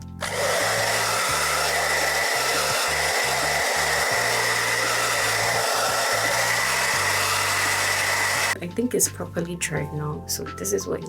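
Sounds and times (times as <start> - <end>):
blow dryer running: 0.0 - 8.6.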